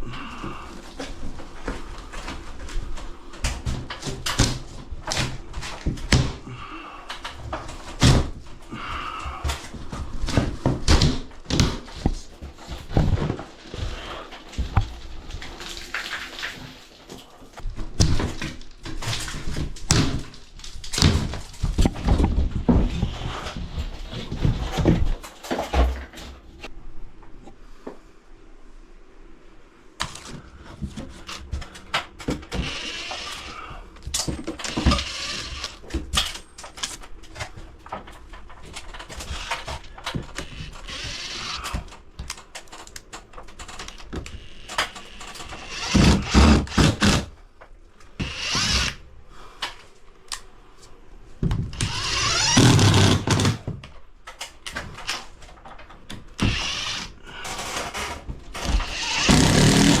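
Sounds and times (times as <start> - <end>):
power drill running: 32.5 - 33.8, 34.6 - 35.8, 39.2 - 41.8, 43.8 - 47.3, 48.2 - 49.0, 51.8 - 53.5, 56.4 - 57.2, 58.6 - 60.0.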